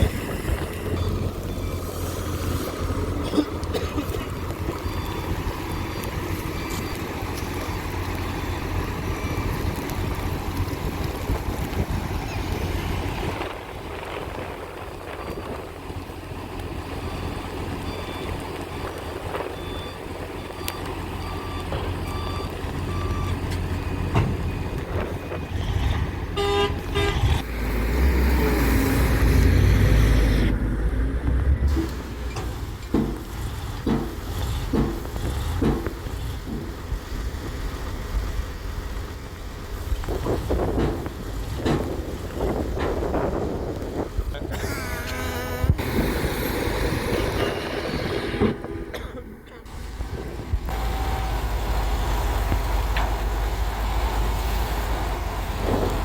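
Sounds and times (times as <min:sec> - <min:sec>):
diesel machinery rumbling: 0:00.0 - 0:56.0
horn-like tone: 0:26.4 - 0:27.4.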